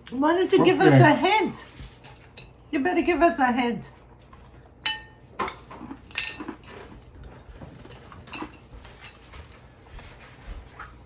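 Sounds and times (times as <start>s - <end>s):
tableware clicks and clinks: 4.8s - 6.7s.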